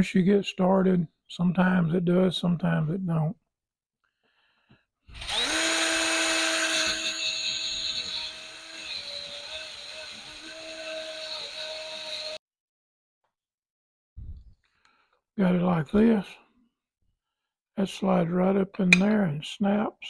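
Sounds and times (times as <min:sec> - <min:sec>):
power tool motor whining: 0:05.1 - 0:12.4.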